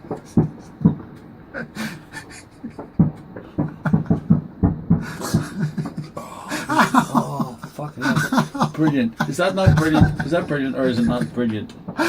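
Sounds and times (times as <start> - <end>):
person laughing breathily: 0.2 - 4.3, 5.0 - 10.3.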